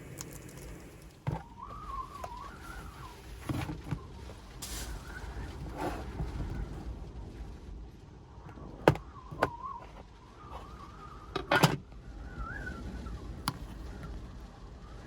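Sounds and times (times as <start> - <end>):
storm wind buffeting a van: 0.0 - 15.0
faint wavering whistle: 1.4 - 4.2, 4.8 - 5.6, 9.0 - 13.8.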